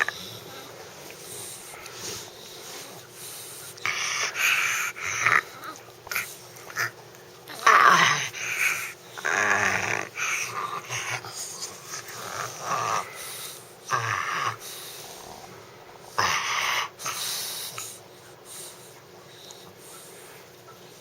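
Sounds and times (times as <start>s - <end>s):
puppy noisy breathing: 0.0s - 21.0s.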